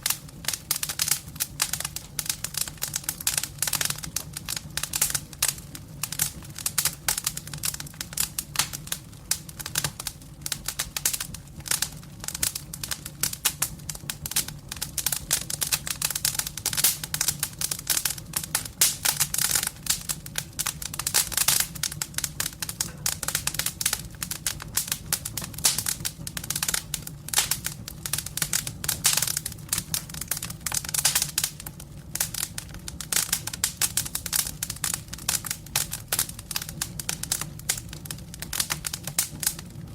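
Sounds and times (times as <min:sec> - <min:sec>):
low rumble of flames: 0:00.0 - 0:39.9
wood fire crackling: 0:00.0 - 0:39.9.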